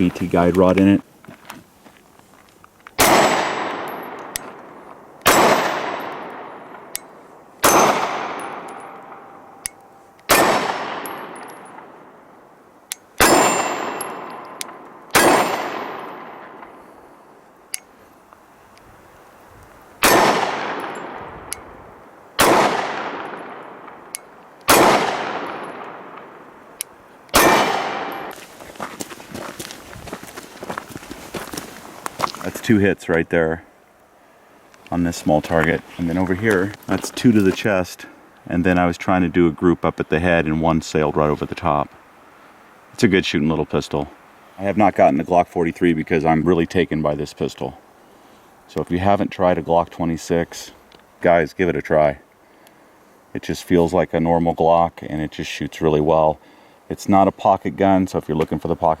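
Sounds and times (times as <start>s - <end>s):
pistol shots: 3.0s - 12.0s, 13.2s - 16.8s, 20.0s - 21.3s, 22.4s - 24.1s, 24.7s - 26.4s, 27.3s - 28.4s.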